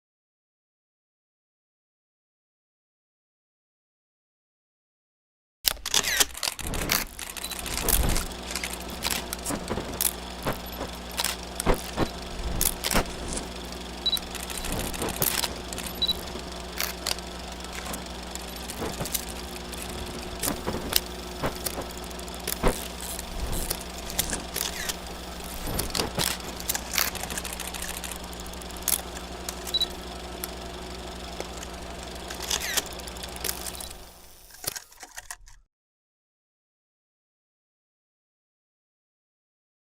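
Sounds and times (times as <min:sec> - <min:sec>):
film projector motor hum: 0:05.7 - 0:35.4
projector clicks and crackles: 0:05.7 - 0:35.6.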